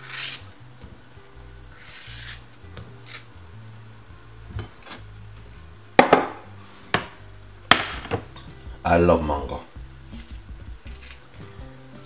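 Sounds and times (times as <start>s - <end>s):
knife scraping on cutting board: 0.0s - 0.5s, 1.8s - 3.3s, 10.2s - 11.3s
background music: 0.0s - 12.0s
knife knocking on cutting board: 6.0s - 8.3s.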